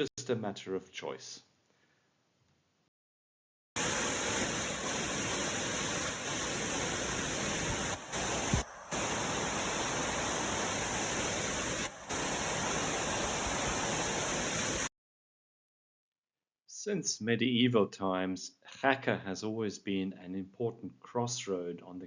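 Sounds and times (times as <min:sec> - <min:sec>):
river water rushing: 0:03.8 - 0:14.9.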